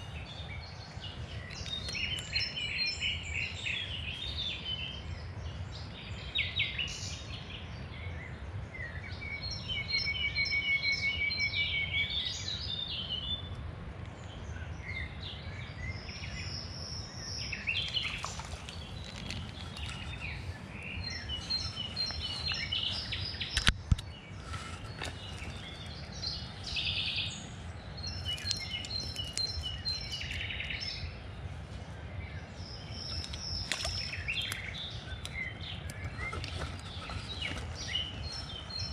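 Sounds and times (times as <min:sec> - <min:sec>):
songbirds singing: 0:00.0 - 0:38.9.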